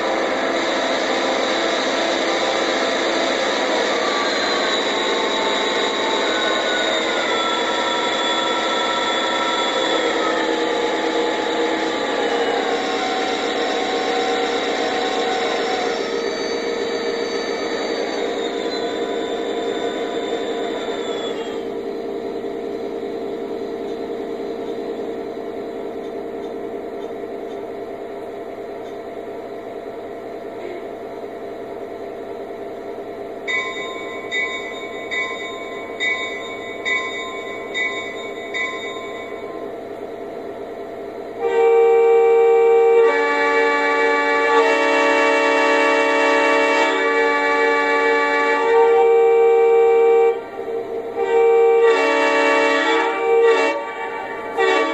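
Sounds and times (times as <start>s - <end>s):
diesel locomotive engine idling: 0.0s - 54.9s
locomotive bell ringing: 3.9s - 21.7s, 33.4s - 40.0s
locomotive horn: 41.4s - 54.9s.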